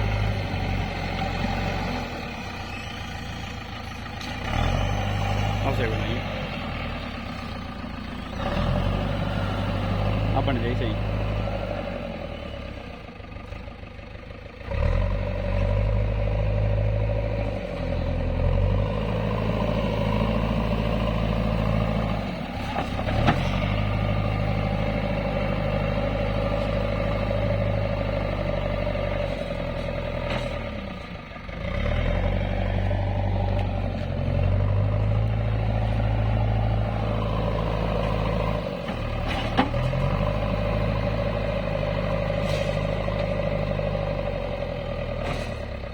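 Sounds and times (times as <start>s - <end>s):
earthmover diesel engine revving: 0.0s - 45.9s.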